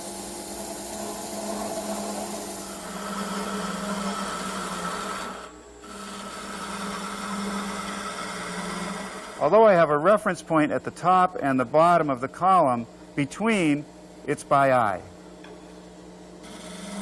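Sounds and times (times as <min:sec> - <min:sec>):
wood lathe humming: 0:00.0 - 0:12.6, 0:16.4 - 0:17.0
turning tool scraping wood: 0:01.4 - 0:09.8, 0:16.4 - 0:17.0.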